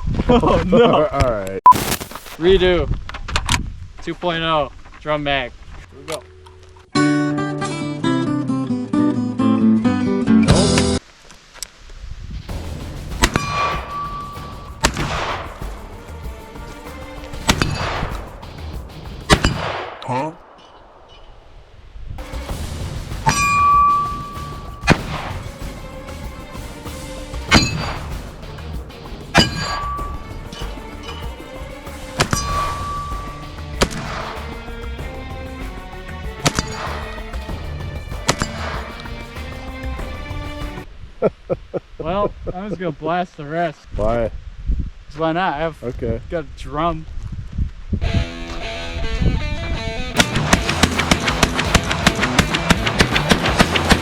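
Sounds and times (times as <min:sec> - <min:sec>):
background music: 0:06.2 - 0:11.0, 0:12.5 - 0:19.8, 0:22.2 - 0:40.9, 0:48.0 - 0:54.0
shotgun shots: 0:13.1 - 0:14.0, 0:14.7 - 0:15.7, 0:17.4 - 0:18.3, 0:19.3 - 0:21.1, 0:24.4 - 0:25.6, 0:32.2 - 0:34.5, 0:50.2 - 0:54.0
metallic ring: 0:13.3 - 0:14.8, 0:23.3 - 0:24.8, 0:29.4 - 0:31.2, 0:32.3 - 0:33.5.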